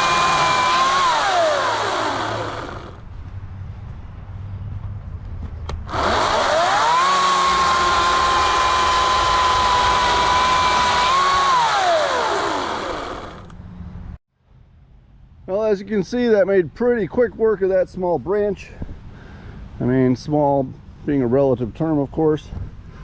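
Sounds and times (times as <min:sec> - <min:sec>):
electric chainsaw cutting branch: 0:00.0 - 0:03.0, 0:05.9 - 0:13.6.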